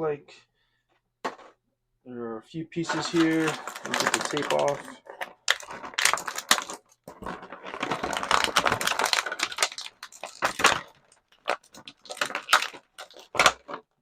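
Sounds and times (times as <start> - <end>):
plastic crackling: 2.8 - 14.0.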